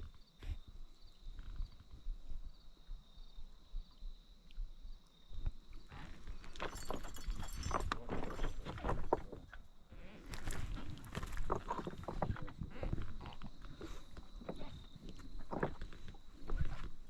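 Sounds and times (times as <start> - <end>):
rustling and clattering of gear: 5.8 - 17.0.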